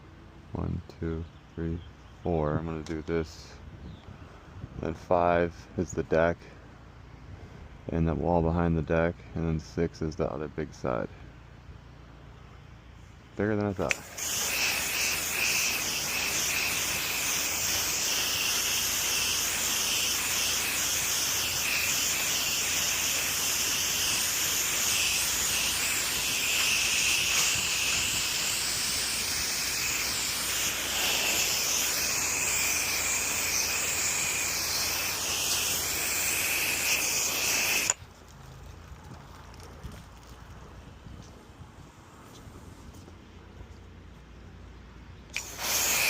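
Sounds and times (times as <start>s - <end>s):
pressure washer spraying water: 13.8s - 38.0s, 45.3s - 46.0s.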